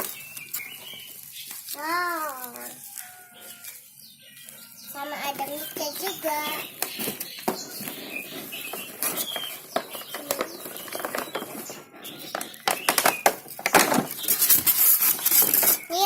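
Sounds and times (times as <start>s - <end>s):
plastic packaging crinkling: 0.0s - 4.7s.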